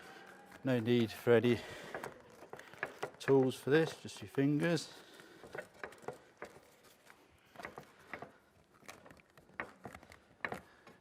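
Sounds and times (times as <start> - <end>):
hands tapping and rubbing flashing: 1.9 - 4.8, 5.4 - 11.0.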